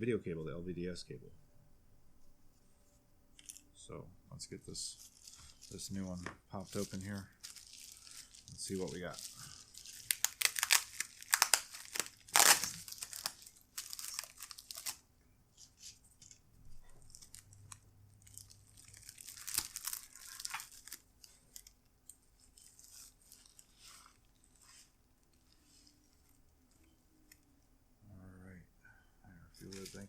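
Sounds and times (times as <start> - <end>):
packaging tearing and crinkling: 4.9 - 15.0, 15.6 - 26.4, 29.6 - 30.0.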